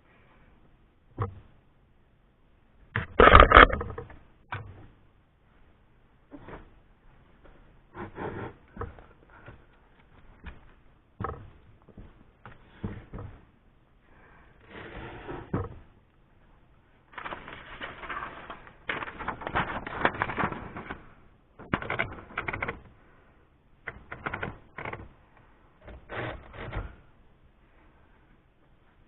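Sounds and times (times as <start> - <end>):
manual typewriter typing: 17.2 - 21.0.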